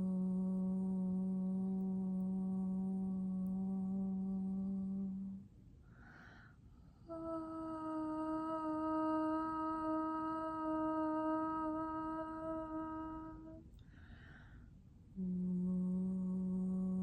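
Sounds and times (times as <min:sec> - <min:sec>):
woman singing long held note: 0:00.0 - 0:05.5, 0:07.0 - 0:13.7, 0:15.2 - 0:17.0
woman breathing in: 0:05.8 - 0:06.8, 0:13.8 - 0:14.8.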